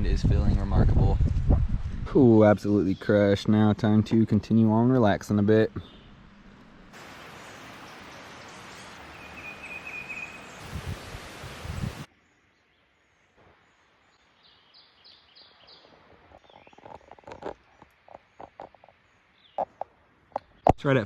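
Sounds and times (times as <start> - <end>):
wind blowing across microphone: 0.0 - 3.1, 10.4 - 12.1
bird chirping: 5.7 - 11.2, 12.1 - 20.8.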